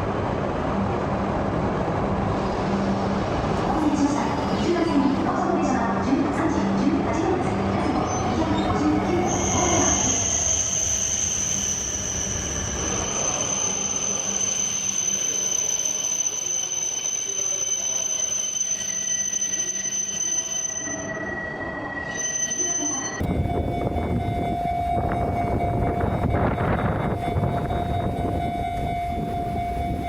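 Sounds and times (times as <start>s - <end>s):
train rumbling past: 0.0s - 16.1s, 23.2s - 30.0s
train wheels squealing on rails: 3.7s - 30.0s.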